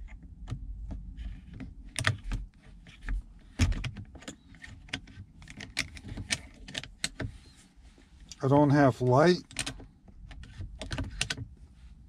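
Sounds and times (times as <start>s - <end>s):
gear shifter clicks and rattles: 0.0s - 11.6s.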